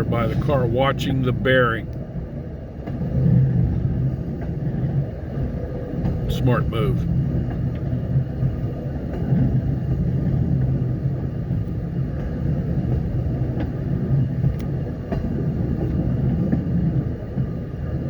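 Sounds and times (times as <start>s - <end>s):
train rumbling slowly: 0.0s - 18.0s.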